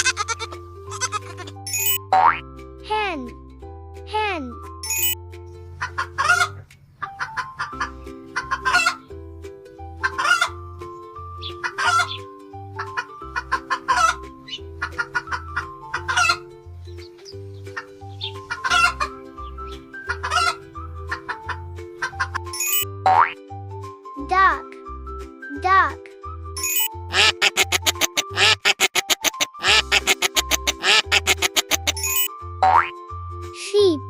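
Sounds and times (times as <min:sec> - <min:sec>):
hen clucking: 0:00.0 - 0:02.0, 0:05.8 - 0:09.0, 0:10.0 - 0:10.6, 0:11.5 - 0:12.2, 0:12.8 - 0:14.2, 0:14.8 - 0:16.5, 0:17.8 - 0:19.2, 0:20.1 - 0:22.8, 0:26.6 - 0:32.3
light background music: 0:00.0 - 0:34.0.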